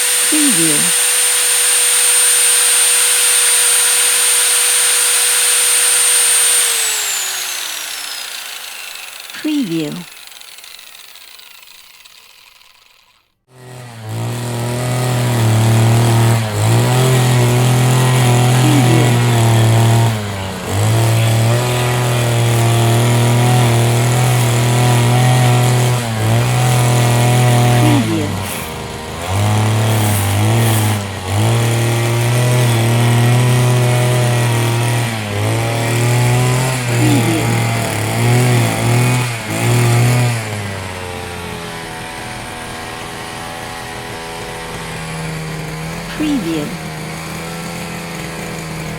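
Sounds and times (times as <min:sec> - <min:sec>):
cutting machine motor whining: 0:00.0 - 0:34.4.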